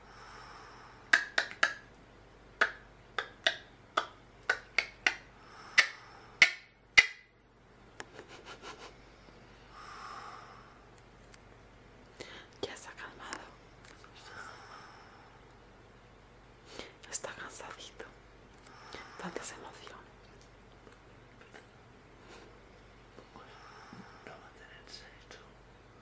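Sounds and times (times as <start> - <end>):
soft breathy noise: 0.0 - 1.2, 5.3 - 6.4, 8.5 - 11.1, 12.1 - 15.8, 16.6 - 20.2, 22.1 - 26.0.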